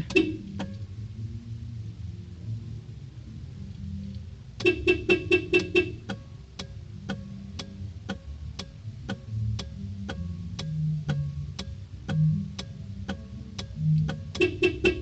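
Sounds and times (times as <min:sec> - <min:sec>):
car alarm beeping chirps: 0:00.0 - 0:00.5, 0:04.6 - 0:06.1, 0:14.1 - 0:15.0
sharp clicking: 0:05.6 - 0:14.6.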